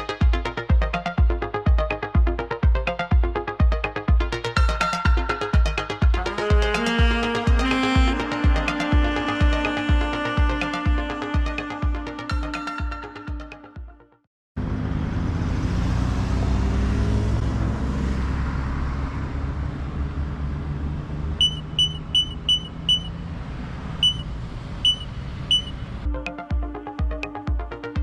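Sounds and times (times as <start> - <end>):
car passing with road rumble: 14.6 - 26.1
short high beeps: 21.4 - 23.1, 24.0 - 24.2, 24.8 - 25.8.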